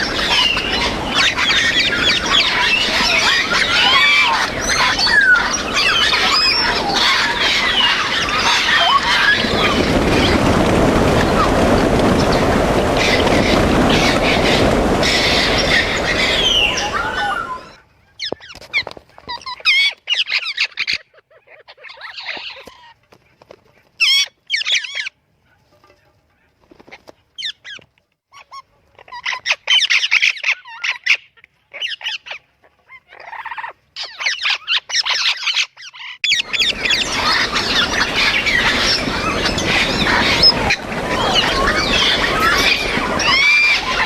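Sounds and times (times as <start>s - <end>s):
parrot calls: 0.0s - 10.4s, 13.0s - 18.5s, 27.4s - 44.0s.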